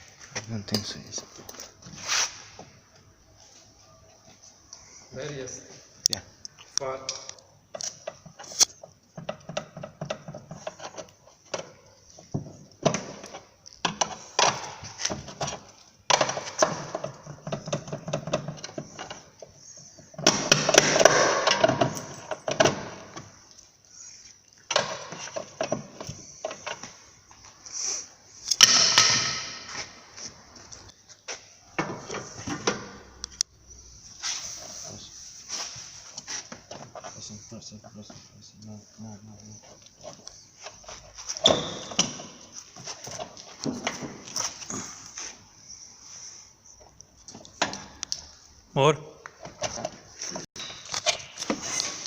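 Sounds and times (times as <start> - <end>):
hand tools clicking and knocking: 7.1 - 23.5, 24.7 - 27.0.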